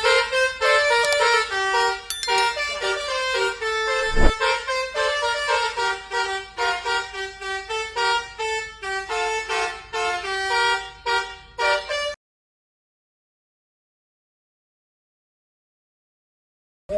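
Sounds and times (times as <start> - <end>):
multi-tone bus air horn tune: 4.5 - 12.2.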